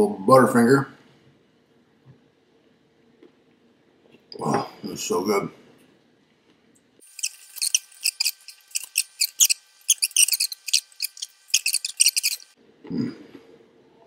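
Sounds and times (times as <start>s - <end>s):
squeaky wet eating sounds: 7.0s - 12.6s.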